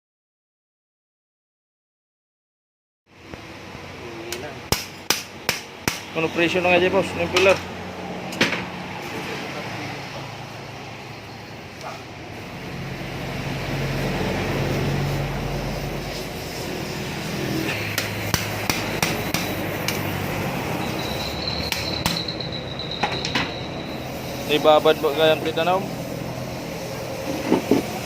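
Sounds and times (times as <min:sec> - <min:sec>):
sharp metallic knocks: 0:04.7 - 0:06.2, 0:17.7 - 0:20.2, 0:21.6 - 0:23.6.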